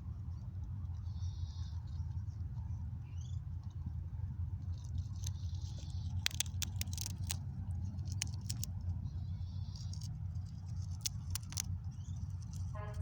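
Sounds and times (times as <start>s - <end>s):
steady low rumble: 0.0s - 13.0s
squirrel cracking peanut shells: 4.6s - 12.8s.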